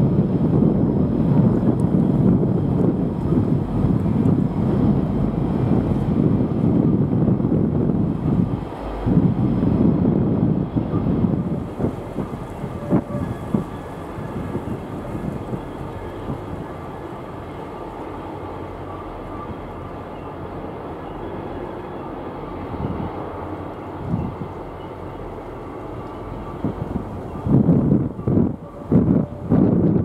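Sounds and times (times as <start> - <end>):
train rolling on rails: 0.0 - 30.0
train knocks and clanks: 10.9 - 20.3.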